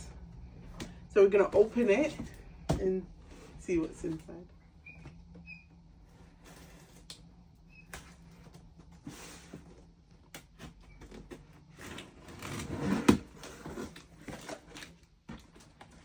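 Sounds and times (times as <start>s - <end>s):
cardboard packaging rustling: 11.1s - 16.0s.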